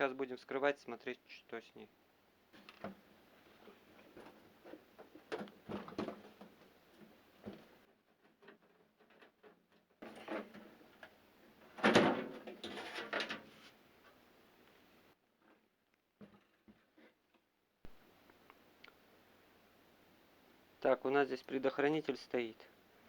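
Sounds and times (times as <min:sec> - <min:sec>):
scraping and rattling: 0:02.6 - 0:13.8.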